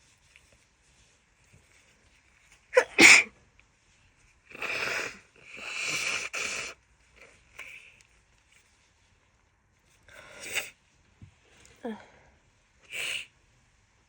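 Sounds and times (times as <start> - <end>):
woman sneezing: 2.8 - 3.3
wet nose blowing: 4.5 - 6.8.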